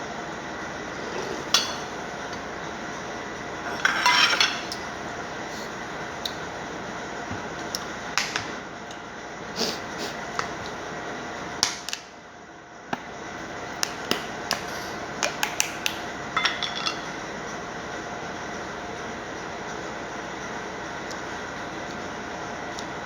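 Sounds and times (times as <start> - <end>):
steady background noise: 0.0 - 23.0
dishes and cutlery clinking: 1.2 - 2.0, 3.7 - 4.8, 16.4 - 17.2.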